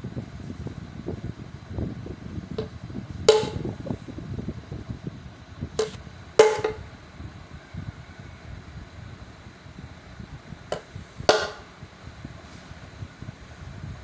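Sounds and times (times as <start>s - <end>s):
sharp knocks with ringing: 3.3s - 3.8s, 5.8s - 6.9s, 10.8s - 11.7s.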